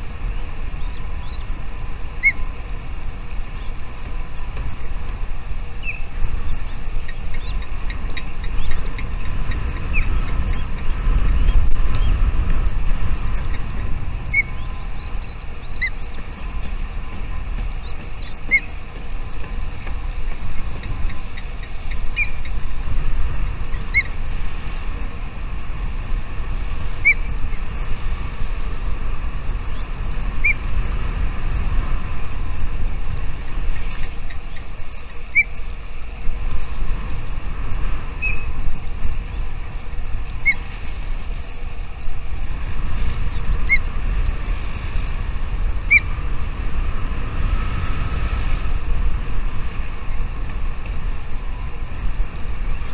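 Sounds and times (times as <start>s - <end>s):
steady low rumble: 0.0s - 52.9s
bird chirping: 0.2s - 1.6s, 5.8s - 12.2s, 13.5s - 18.8s.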